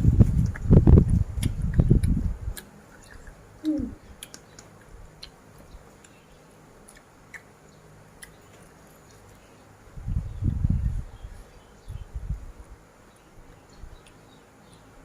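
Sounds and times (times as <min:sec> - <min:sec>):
person chewing food: 0:00.2 - 0:03.4, 0:04.0 - 0:06.2.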